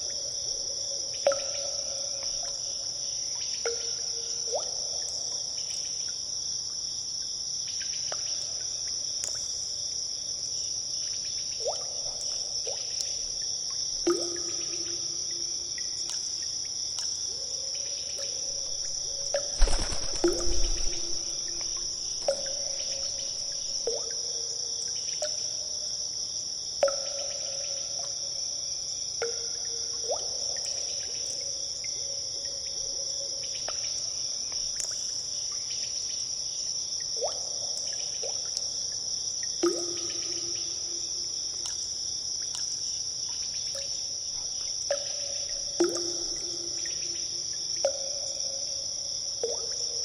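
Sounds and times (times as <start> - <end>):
steady high-pitched hiss: 0.0 - 50.0
water drops plinking into pool: 1.1 - 2.7, 3.4 - 6.2, 8.0 - 9.7, 11.5 - 17.3, 18.1 - 25.7, 26.8 - 28.2, 29.2 - 32.0, 33.6 - 35.6, 37.0 - 48.5, 49.4 - 50.0.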